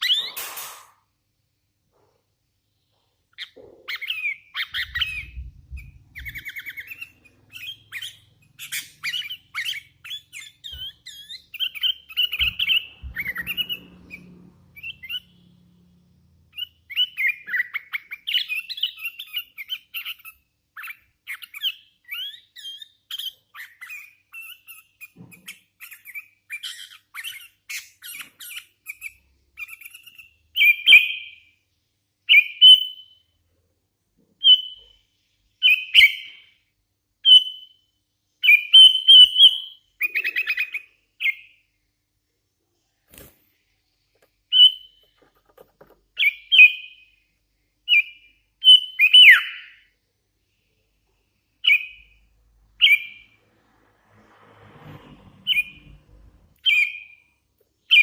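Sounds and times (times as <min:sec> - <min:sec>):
bird chirping and squawking: 0:00.0 - 0:00.9, 0:03.3 - 0:15.6, 0:16.4 - 0:31.5, 0:32.3 - 0:33.2, 0:34.4 - 0:35.0, 0:35.6 - 0:36.6, 0:38.4 - 0:41.6, 0:44.5 - 0:47.2, 0:47.9 - 0:49.9, 0:51.6 - 0:53.4, 0:55.3 - 0:58.0.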